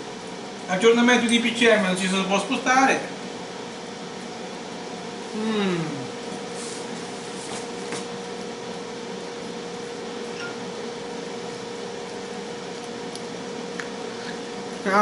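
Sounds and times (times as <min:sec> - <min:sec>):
air fryer fan whirring: 0:00.0 - 0:15.0.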